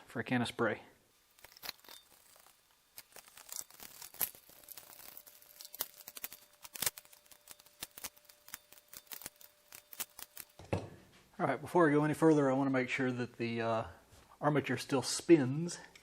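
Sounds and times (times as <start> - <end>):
pump parts clicking and rustling: 1.3 - 10.7.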